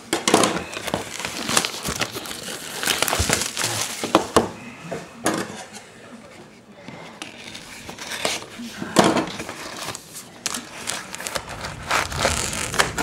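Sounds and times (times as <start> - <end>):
packaging crinkling and tearing: 0.7 - 4.1, 9.4 - 13.0.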